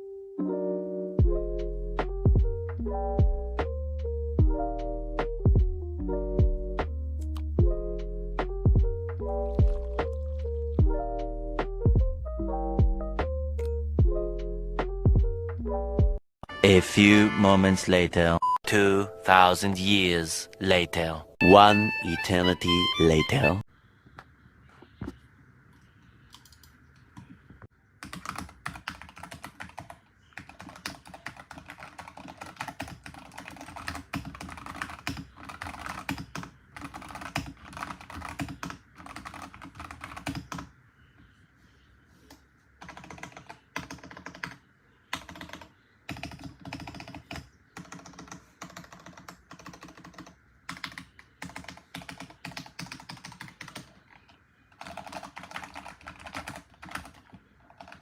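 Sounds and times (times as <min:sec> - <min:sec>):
mechanical keyboard typing: 0:28.0 - 0:40.7, 0:42.8 - 0:58.0.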